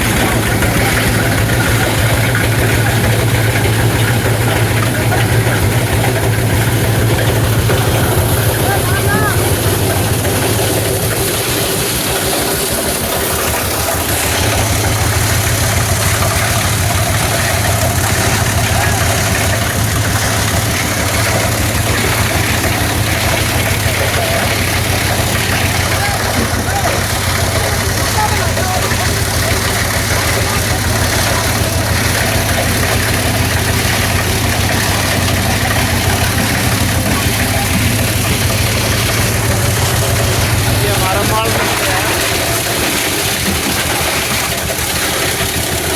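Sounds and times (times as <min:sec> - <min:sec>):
diesel engine pulsing rumble: 0:00.0 - 0:45.9
scrap grinder whirring: 0:00.0 - 0:45.9.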